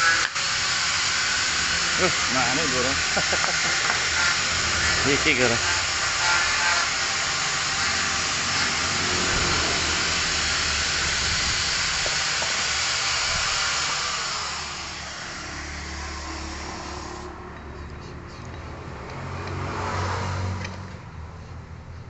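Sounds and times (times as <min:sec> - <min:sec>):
loud hissing noise: 0:00.0 - 0:17.4.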